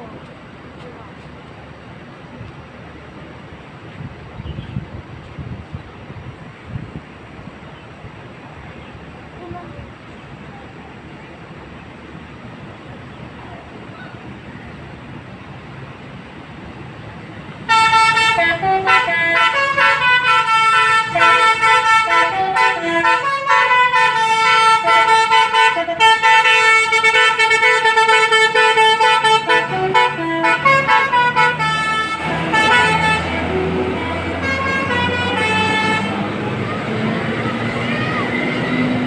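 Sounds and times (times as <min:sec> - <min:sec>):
vehicle noise: 0:00.0 - 0:39.0
bus musical horn melody: 0:17.6 - 0:39.0.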